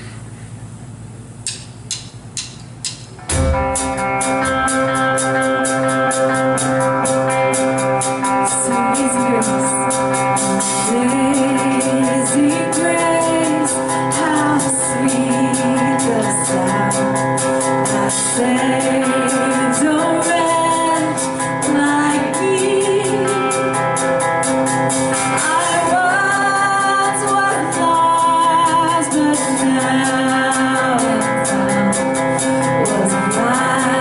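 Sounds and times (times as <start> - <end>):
steady drum beat: 1.4 - 9.2
guitar chords: 2.4 - 34.0
person singing: 8.1 - 24.0, 25.1 - 34.0.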